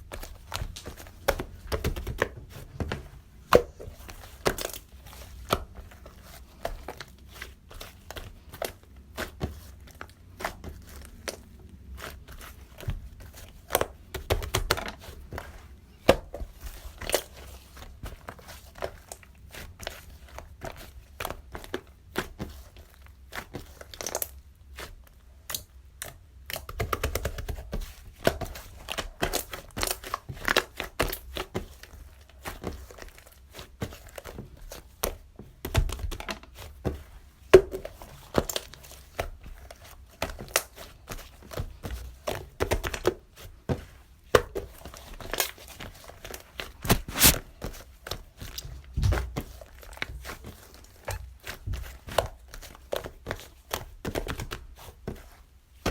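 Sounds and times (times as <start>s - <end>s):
crinkling and tearing: 44.6s - 54.5s.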